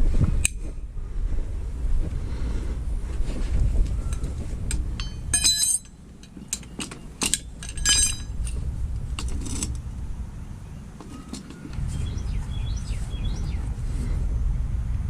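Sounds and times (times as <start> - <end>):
steady low rumble: 0.0 - 15.0
metal tools clinking: 4.0 - 9.8, 11.0 - 11.8.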